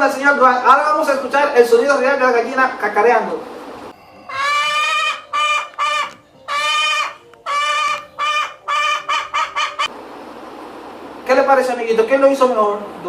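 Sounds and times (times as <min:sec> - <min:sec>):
hen cackling: 0:04.2 - 0:09.9.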